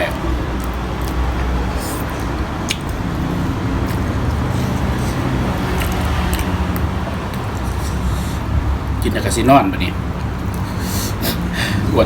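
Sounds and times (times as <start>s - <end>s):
steady low rumble: 0.2s - 10.8s
person chewing food: 0.5s - 8.6s
wet mouth clicks: 0.6s - 3.1s, 3.8s - 8.2s.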